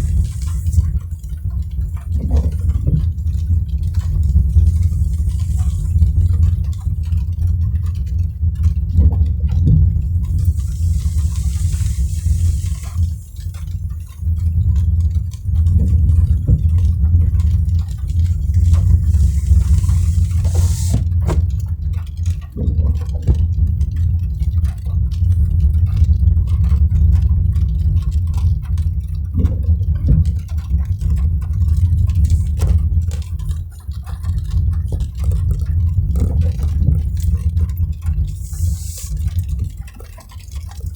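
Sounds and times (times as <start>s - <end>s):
car road and engine rumble: 0.0s - 22.1s
raindrops tapping: 0.0s - 40.9s
short hiss: 10.4s - 13.4s, 18.7s - 21.1s, 38.4s - 39.2s.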